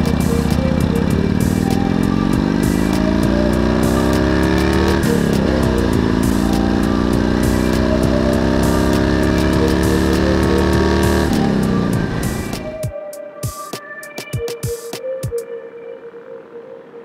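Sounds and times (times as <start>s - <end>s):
motorcycle engine accelerating: 0.0s - 12.9s.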